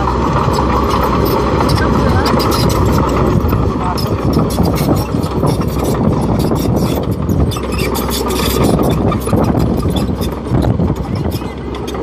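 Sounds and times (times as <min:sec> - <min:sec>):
engine running: 0:00.0 - 0:12.0
rapid clicking and rattling: 0:00.0 - 0:12.0.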